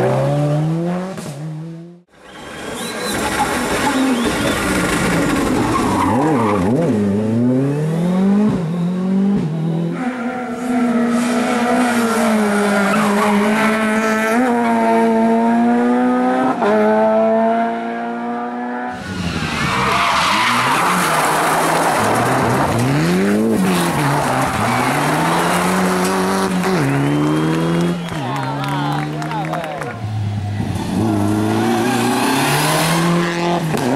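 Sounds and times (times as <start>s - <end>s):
rally car engines revving: 0.0s - 33.9s.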